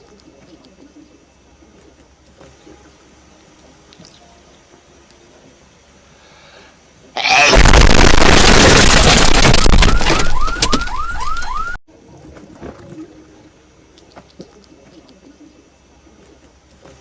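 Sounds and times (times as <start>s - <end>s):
loud distorted explosion blast: 7.3s - 10.4s.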